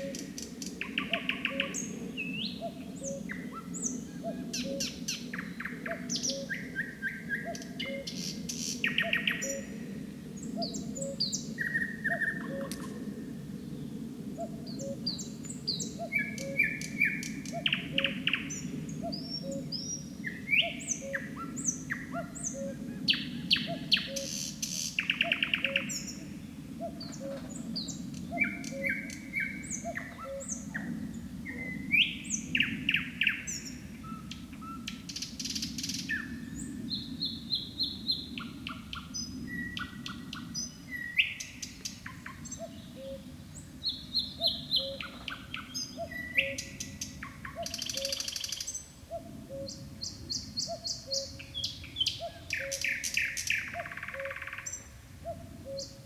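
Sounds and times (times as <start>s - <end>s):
nightingale singing: 14.4s - 26.2s, 28.3s - 30.6s, 43.8s - 56.0s.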